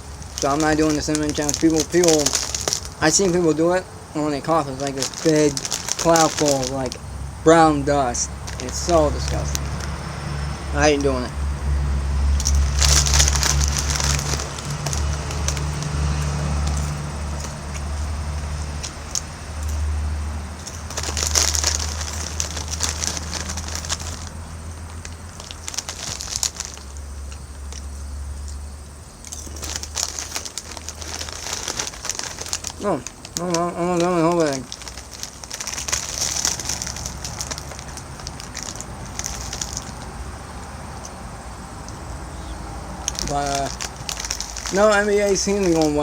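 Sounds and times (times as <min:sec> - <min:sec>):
steady low hum: 0:00.0 - 0:39.2
crunching tortilla chips: 0:00.0 - 0:46.0.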